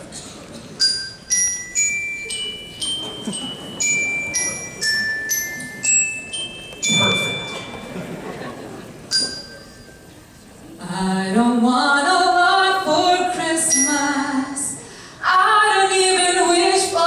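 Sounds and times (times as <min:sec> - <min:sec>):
glockenspiel melody: 0:00.8 - 0:10.1, 0:13.6 - 0:14.4.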